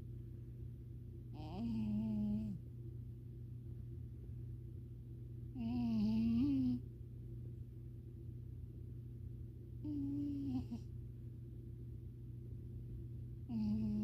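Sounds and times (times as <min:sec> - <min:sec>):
steady low hum: 0:00.0 - 0:14.0
cat snoring: 0:01.4 - 0:02.6, 0:05.6 - 0:06.8, 0:09.8 - 0:10.8, 0:13.5 - 0:14.0.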